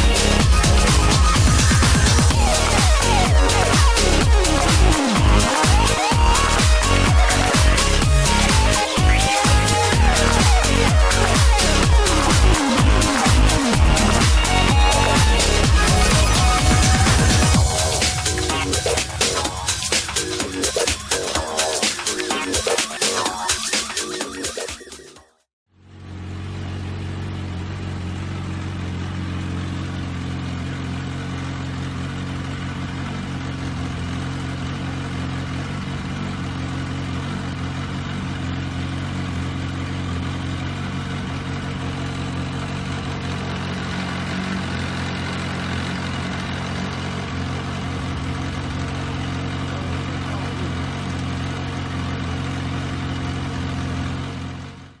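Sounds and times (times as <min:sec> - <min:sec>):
motorcycle engine idling: 0:25.8 - 0:54.9.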